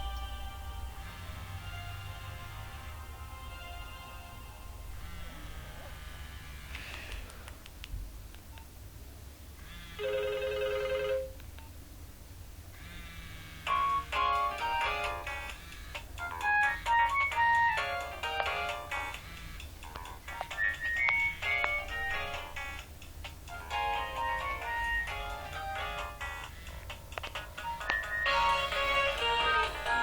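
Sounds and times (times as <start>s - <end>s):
low hum: 0.0s - 9.6s
mobile phone ringtone: 10.0s - 11.4s, 13.7s - 15.5s, 16.2s - 19.2s, 19.9s - 22.8s, 23.6s - 26.6s, 27.5s - 30.0s.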